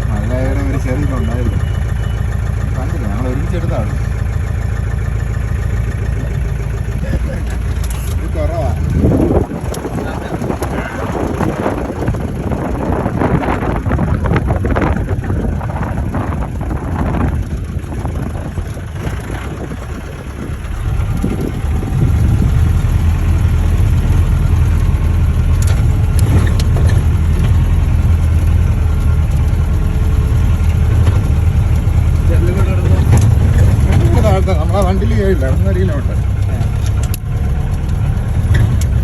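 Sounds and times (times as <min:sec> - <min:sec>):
off-road vehicle engine running: 0:00.0 - 0:39.0
rough wind noise: 0:08.0 - 0:35.6.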